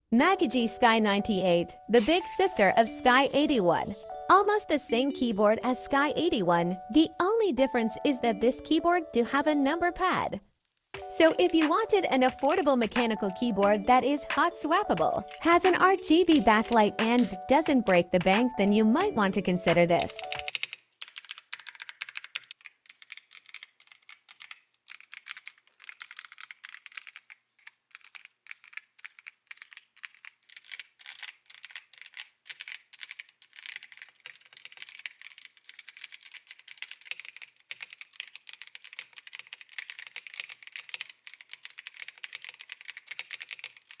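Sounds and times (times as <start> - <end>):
mechanical keyboard typing: 11.0 - 18.5, 19.6 - 44.0.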